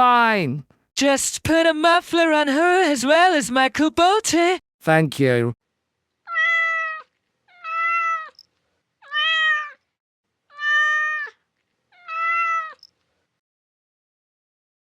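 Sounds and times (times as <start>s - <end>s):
cat meowing: 6.3s - 8.4s, 9.0s - 9.8s, 10.5s - 12.9s.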